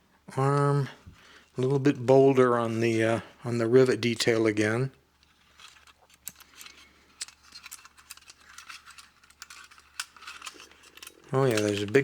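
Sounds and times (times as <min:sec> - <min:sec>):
tin toys clicking and rattling: 0:05.2 - 0:12.0.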